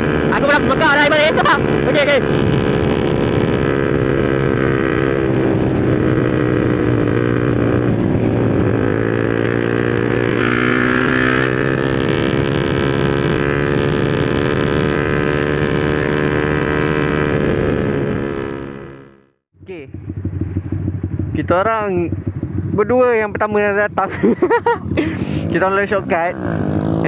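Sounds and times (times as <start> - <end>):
motorcycle engine cruising: 0.0 - 27.0
wind on microphone: 1.5 - 18.6.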